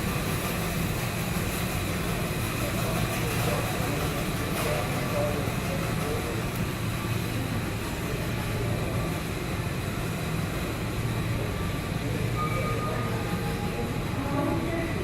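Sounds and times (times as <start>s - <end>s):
store background rumble: 0.0s - 15.0s
faint short tones: 12.3s - 13.8s.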